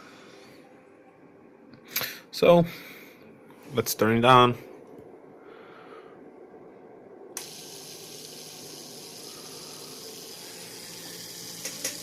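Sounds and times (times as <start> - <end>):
pump watery hiss: 7.4 - 12.0.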